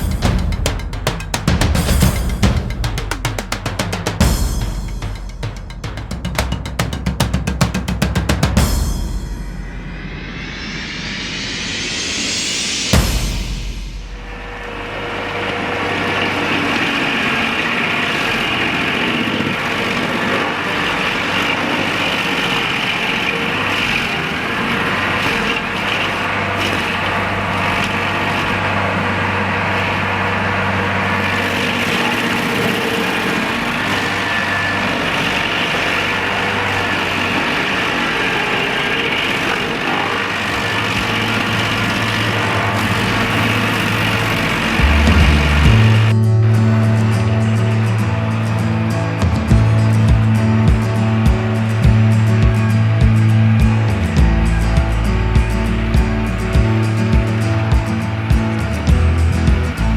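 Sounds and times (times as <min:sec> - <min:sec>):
stump grinder engine running: 0:15.3 - 0:46.2.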